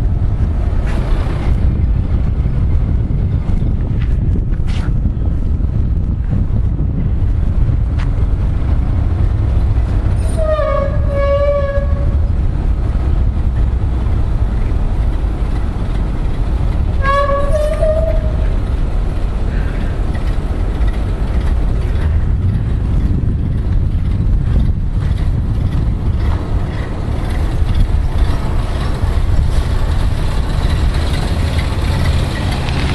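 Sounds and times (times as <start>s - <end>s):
truck engine rumbling: 0.0s - 32.9s
vehicle horn: 10.2s - 12.2s, 17.0s - 18.4s.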